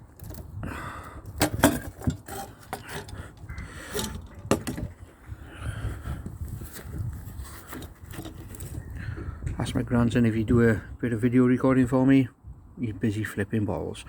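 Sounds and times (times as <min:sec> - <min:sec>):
wood creaking and cracking: 0:00.0 - 0:05.2, 0:06.4 - 0:09.2
pliers scraping metal fixings: 0:01.2 - 0:04.9.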